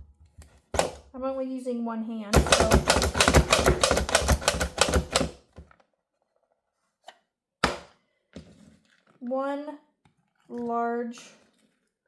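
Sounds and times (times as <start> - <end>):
knife chopping garlic: 2.4 - 5.3.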